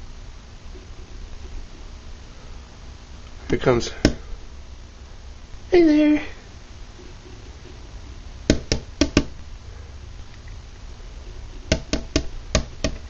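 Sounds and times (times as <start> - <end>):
bird tapping on window glass: 8.5 - 9.4, 11.7 - 13.0.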